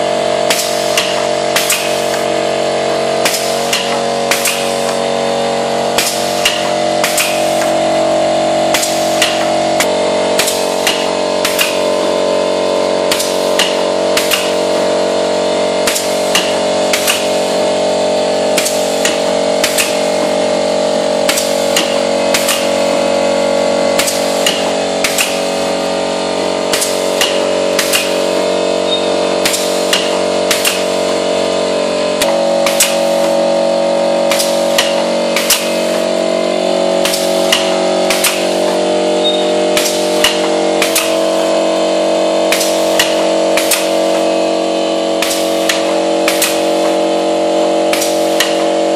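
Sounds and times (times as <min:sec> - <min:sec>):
machine mechanical hum: 0:00.0 - 0:48.9
sharp mechanical clacks: 0:00.5 - 0:02.3, 0:03.2 - 0:05.1, 0:05.9 - 0:07.8, 0:08.7 - 0:11.9, 0:13.1 - 0:14.8, 0:15.8 - 0:17.5, 0:18.6 - 0:20.3, 0:21.2 - 0:23.0, 0:24.0 - 0:25.6, 0:26.7 - 0:31.2, 0:32.2 - 0:33.4, 0:34.3 - 0:36.0, 0:37.0 - 0:41.4, 0:42.5 - 0:44.2, 0:45.2 - 0:47.0, 0:47.9 - 0:48.8.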